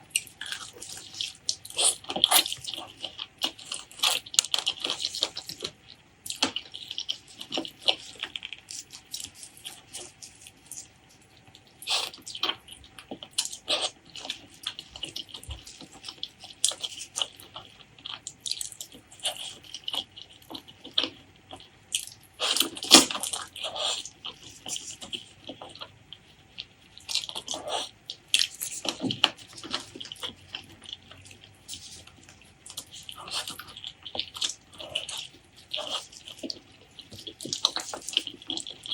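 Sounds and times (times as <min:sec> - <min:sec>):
wet chewing and lip-smacking: 0:00.0 - 0:38.9.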